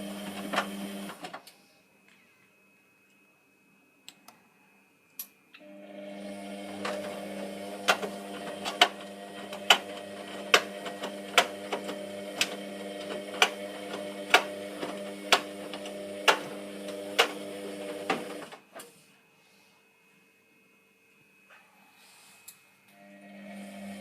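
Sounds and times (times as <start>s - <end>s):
washing machine humming: 0.0s - 1.5s, 5.6s - 18.9s, 22.9s - 24.0s.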